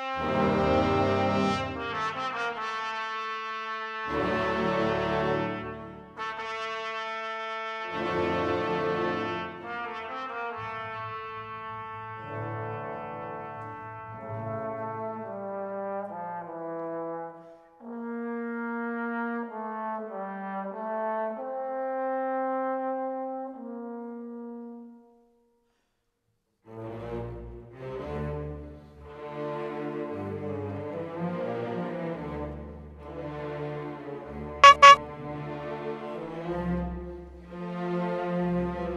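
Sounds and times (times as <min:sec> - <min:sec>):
slow brass music: 0:00.0 - 0:25.1, 0:34.6 - 0:35.3.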